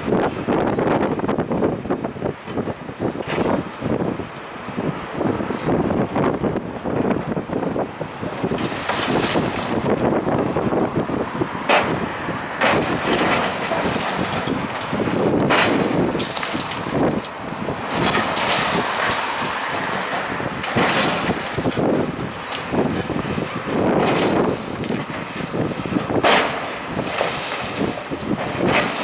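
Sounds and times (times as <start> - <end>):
heavy machinery: 0.0 - 29.0
wind buffeting microphone: 0.0 - 29.0
sharp cracks: 11.6 - 25.5, 26.1 - 29.0.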